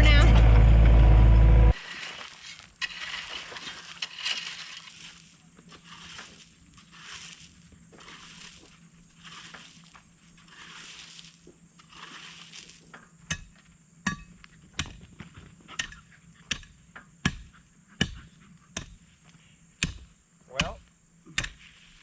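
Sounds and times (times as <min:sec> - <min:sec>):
shovel scraping gravel: 0:01.7 - 0:13.1, 0:21.5 - 0:22.0.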